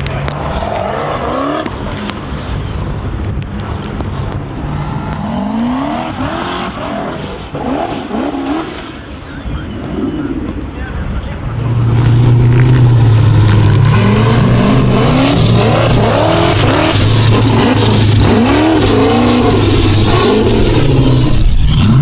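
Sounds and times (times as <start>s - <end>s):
car engine revving hard: 0.1s - 2.4s, 4.8s - 9.1s, 11.6s - 22.0s
low engine rumble: 8.8s - 22.0s.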